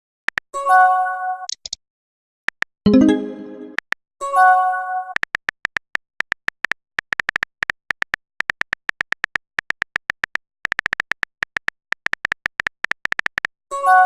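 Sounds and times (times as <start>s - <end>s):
phone keyboard typing clicks: 5.2s - 13.6s.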